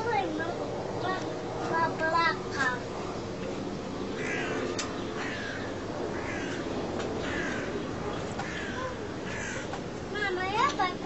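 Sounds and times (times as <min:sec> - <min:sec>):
bird calling: 0:04.0 - 0:09.8.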